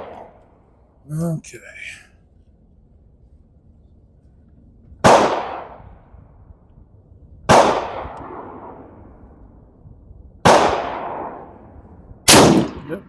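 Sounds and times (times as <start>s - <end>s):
gunshots with echo: 5.0s - 5.8s, 7.5s - 8.9s, 10.5s - 11.5s, 12.3s - 13.0s.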